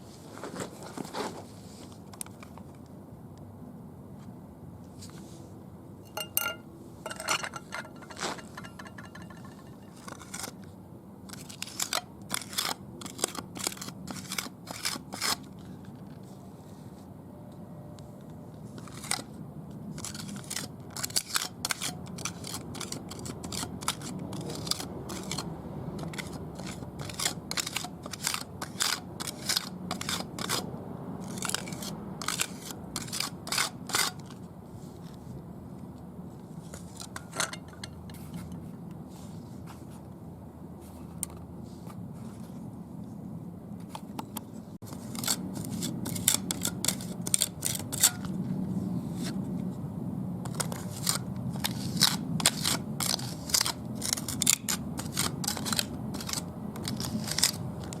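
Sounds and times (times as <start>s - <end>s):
hand tool scraping on concrete: 6.1s - 10.7s, 26.0s - 30.6s, 31.2s - 34.4s, 44.8s - 48.3s, 50.5s - 58.0s.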